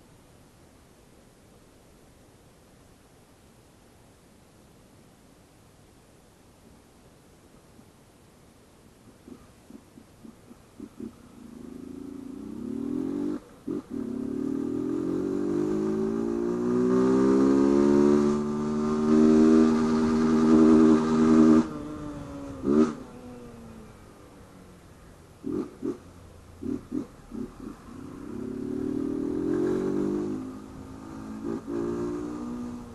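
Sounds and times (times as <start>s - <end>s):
motorcycle engine revving: 10.2s - 24.0s, 25.4s - 32.9s.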